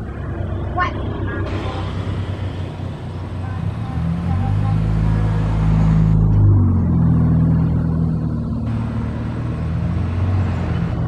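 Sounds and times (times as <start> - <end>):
bus engine passing: 0.0 - 11.0.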